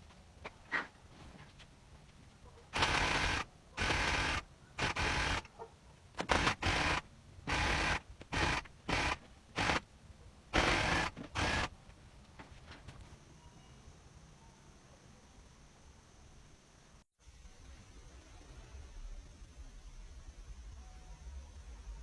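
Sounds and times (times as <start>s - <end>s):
handheld power tool bursts: 2.8s - 5.5s, 6.2s - 9.8s, 10.6s - 11.7s.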